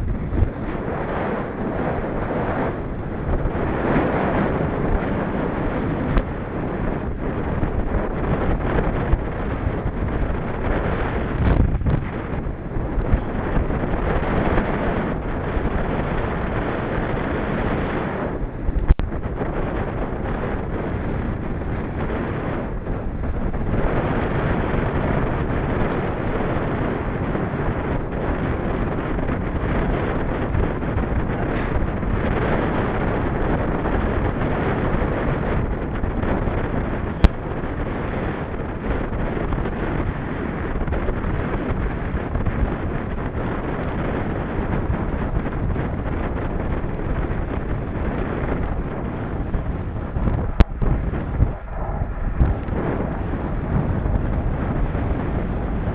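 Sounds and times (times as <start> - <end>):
wind buffeting microphone: 0.0 - 55.9.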